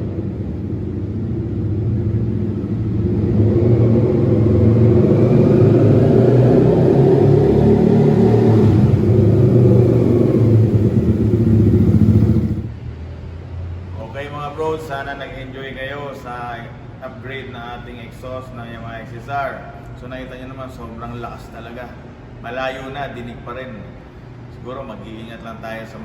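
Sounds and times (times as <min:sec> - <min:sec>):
loud motorcycle engine running: 0:00.4 - 0:12.7.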